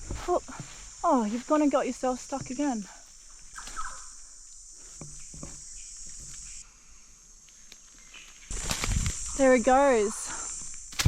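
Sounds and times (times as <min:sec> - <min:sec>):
faint rustling: 0:00.0 - 0:06.6
high-pitched insect chorus: 0:00.0 - 0:11.0.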